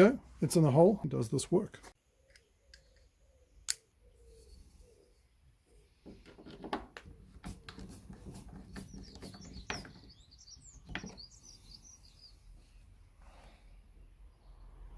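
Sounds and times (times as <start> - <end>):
small birds chirping: 1.9 - 6.0, 7.0 - 14.8.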